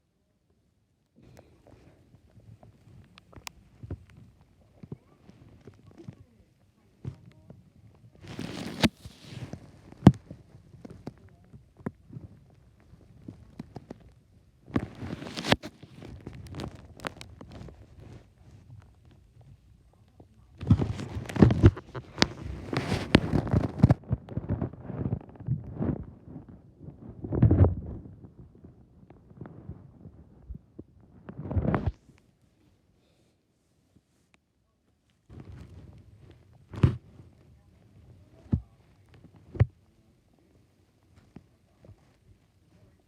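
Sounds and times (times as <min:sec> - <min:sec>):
stomach growling: 0:01.2 - 0:32.0.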